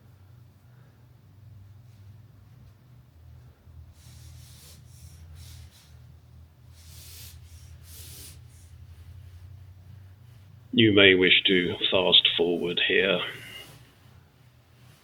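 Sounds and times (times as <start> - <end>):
steady low hum: 0.0 - 15.0
hand rubbing and scraping: 1.7 - 15.0.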